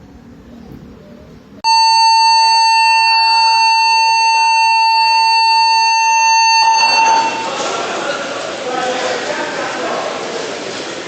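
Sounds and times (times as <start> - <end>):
emergency alarm steady tone: 1.6 - 7.6.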